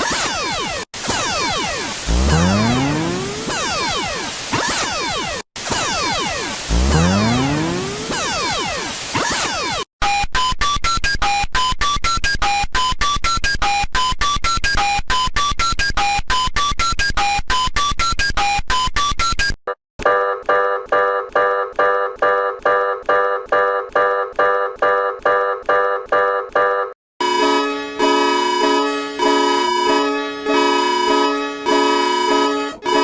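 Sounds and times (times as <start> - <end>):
rapid melody of short beeps: 0.0 - 8.6
pulsing electronic chord: 0.0 - 9.8.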